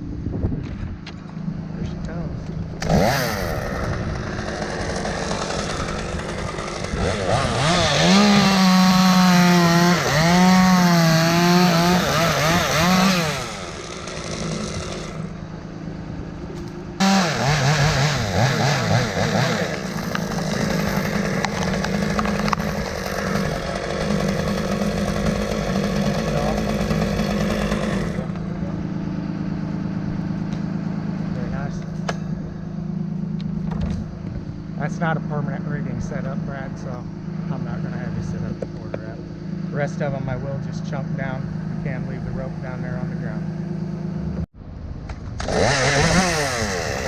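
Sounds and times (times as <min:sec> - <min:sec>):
steady engine running: 0:00.0 - 0:44.5
chainsaw cutting wood: 0:02.8 - 0:15.4, 0:17.0 - 0:28.8, 0:45.2 - 0:47.0.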